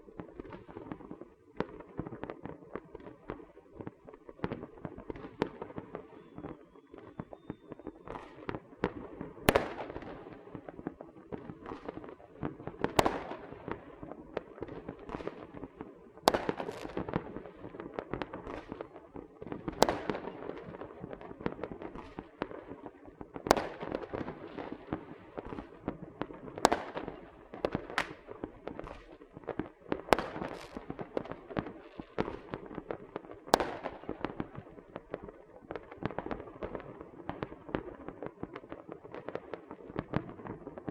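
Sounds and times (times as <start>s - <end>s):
firecrackers crackling: 12.8s - 36.8s
firework bangs: 23.4s - 35.1s.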